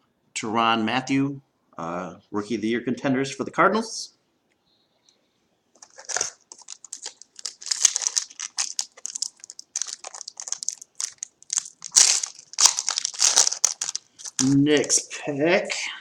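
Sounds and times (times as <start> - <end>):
foil wrapper crinkling: 5.8 - 15.0.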